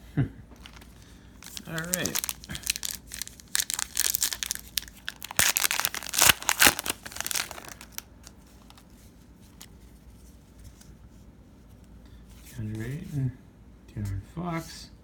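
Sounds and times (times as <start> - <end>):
plastic wrapper tearing and crinkling: 0.6 - 8.9.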